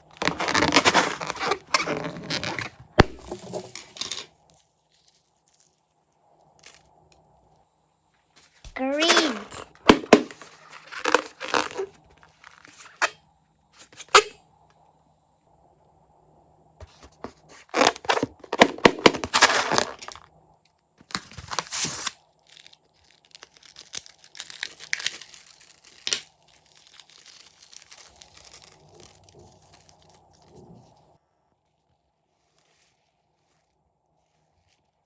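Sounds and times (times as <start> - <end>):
slime crackling and crunching: 22.4 - 30.5.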